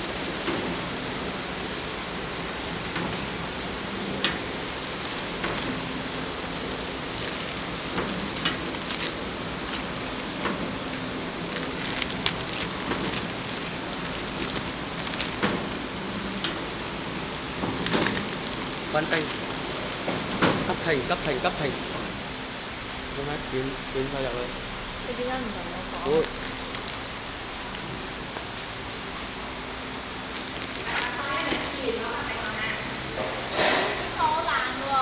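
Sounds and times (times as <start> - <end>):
wrapping machine hiss: 0.0 - 35.0.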